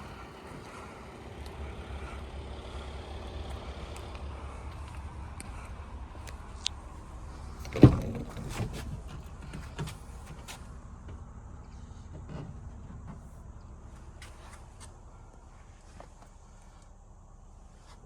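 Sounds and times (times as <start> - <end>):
low steady rumble: 0.0 - 18.0
van door shutting: 5.4 - 10.7.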